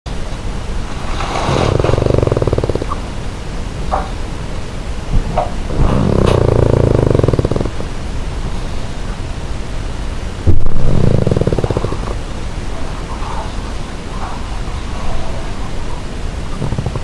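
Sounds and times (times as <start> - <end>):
dog snoring loudly: 0.9 - 3.2, 5.2 - 8.2, 10.4 - 17.0.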